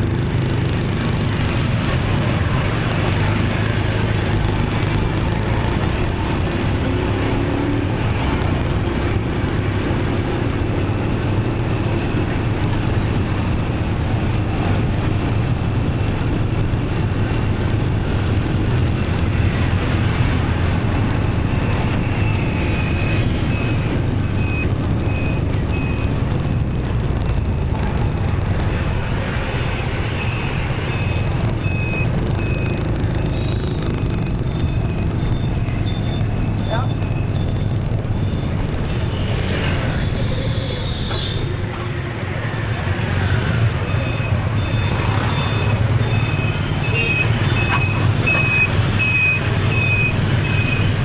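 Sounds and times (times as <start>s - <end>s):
motorbike engine: 0.0s - 51.0s
surrounding traffic: 0.0s - 51.0s
electronic beeps: 27.4s - 41.4s, 42.7s - 51.0s.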